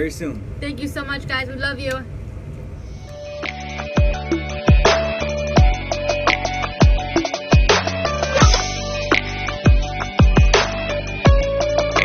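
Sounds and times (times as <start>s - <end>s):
deep bass kicks: 3.5s - 12.0s.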